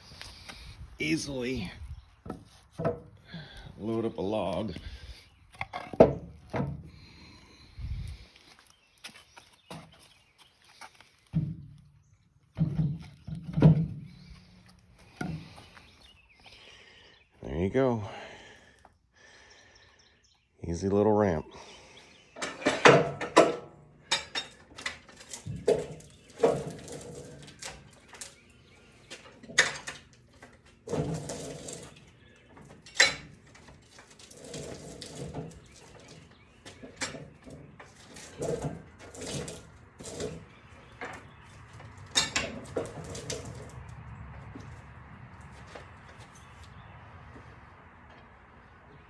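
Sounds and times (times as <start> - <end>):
objects knocking and clattering: 5.6 - 6.9, 22.4 - 28.4, 29.1 - 44.8.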